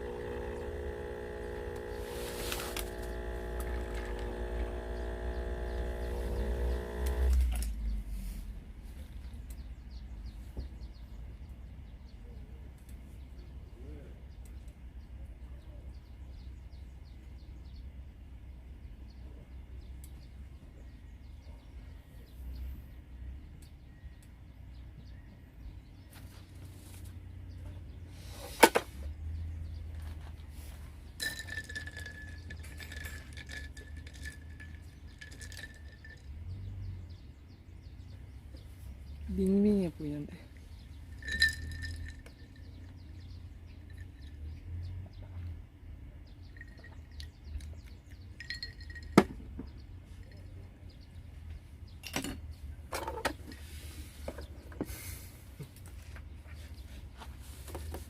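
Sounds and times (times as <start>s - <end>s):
cups clicking and knocking: 0.0s - 7.6s, 31.1s - 36.4s, 41.1s - 43.0s, 46.6s - 50.4s
steady low hum: 0.0s - 10.3s
glass clinking: 31.2s - 36.5s, 41.1s - 43.0s, 48.4s - 49.4s.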